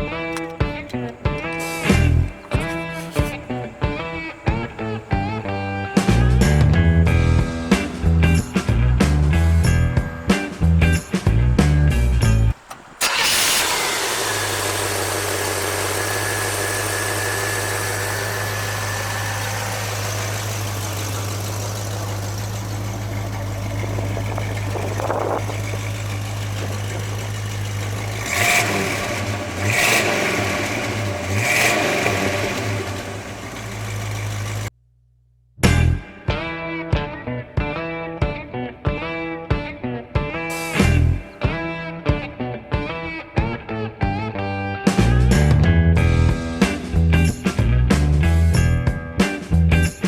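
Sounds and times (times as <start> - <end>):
car engine starting and idling: 0.0 - 34.7
car engine revving: 4.6 - 34.7.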